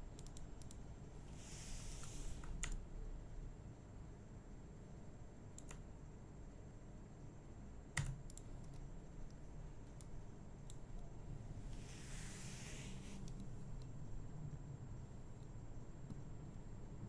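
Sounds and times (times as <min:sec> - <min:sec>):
low room hum: 0:00.0 - 0:17.0
soft hiss: 0:01.1 - 0:02.8, 0:09.2 - 0:14.1.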